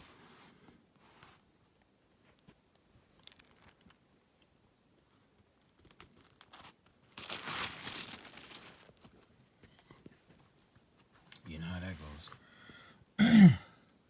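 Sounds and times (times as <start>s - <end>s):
plastic film crinkling and tearing: 3.2s - 4.0s, 5.7s - 9.2s.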